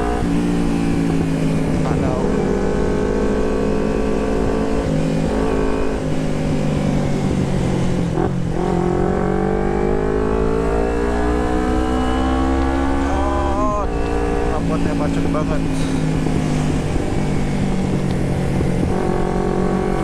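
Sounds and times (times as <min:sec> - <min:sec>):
motorcycle engine accelerating: 0:00.0 - 0:20.0.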